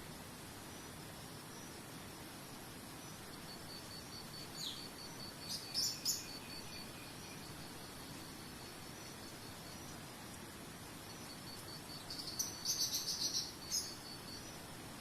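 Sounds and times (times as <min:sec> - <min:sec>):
faint steady hiss: 0:00.0 - 0:15.0
insect trilling: 0:03.5 - 0:10.0, 0:11.1 - 0:14.6
bird calls: 0:12.0 - 0:14.6.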